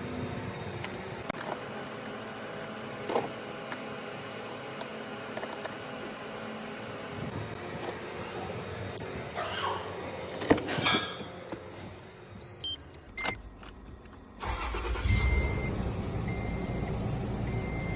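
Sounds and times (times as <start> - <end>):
car engine starting and running: 0.0 - 17.9
short electronic beeps: 11.2 - 13.4, 15.0 - 16.9, 17.5 - 17.9.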